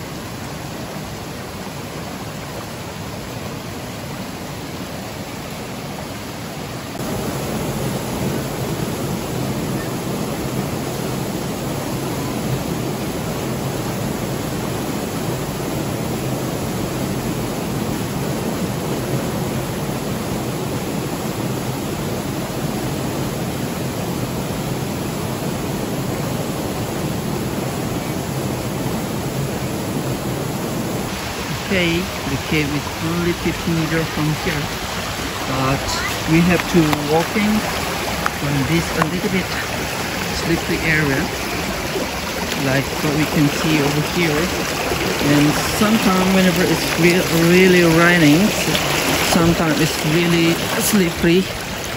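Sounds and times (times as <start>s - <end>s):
waterfall pouring: 31.0s - 51.9s.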